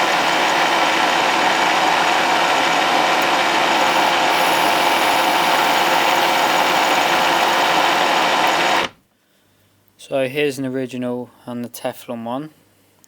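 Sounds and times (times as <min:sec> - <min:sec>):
power tool machining plastic: 0:00.0 - 0:09.0.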